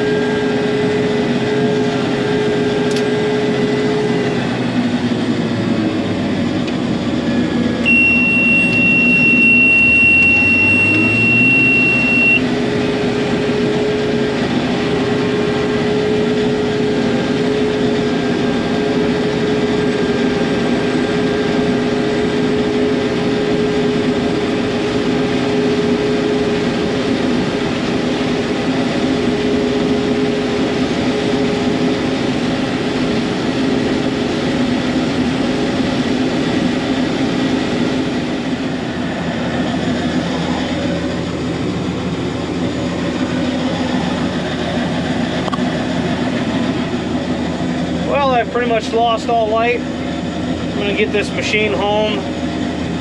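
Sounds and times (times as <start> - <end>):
combine harvester engine running: 0.0 - 53.0
high warning beep: 7.8 - 12.6.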